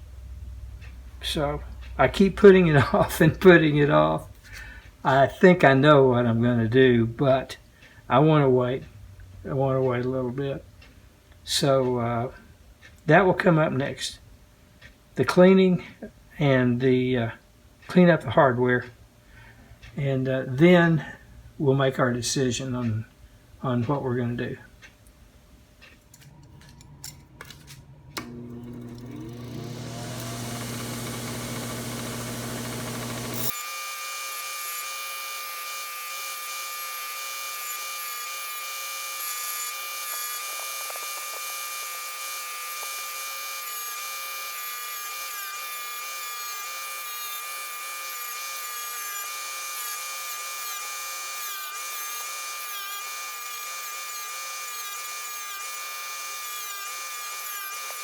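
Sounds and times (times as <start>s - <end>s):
power tool whining: 28.2s - 58.0s.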